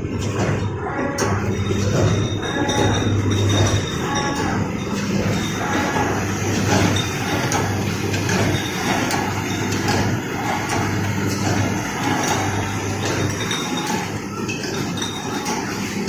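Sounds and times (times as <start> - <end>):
machine clicks and knocks: 0.0 - 16.0
machine motor hum: 0.0 - 16.0.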